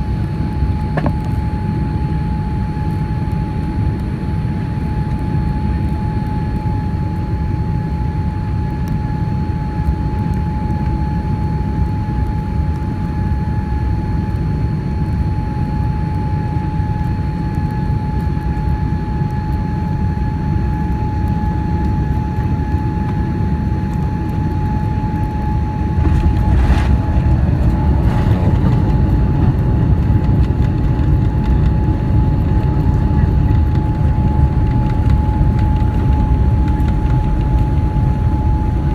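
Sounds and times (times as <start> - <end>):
airplane engines rumbling: 0.0 - 38.9
steady whining tone: 20.2 - 38.9.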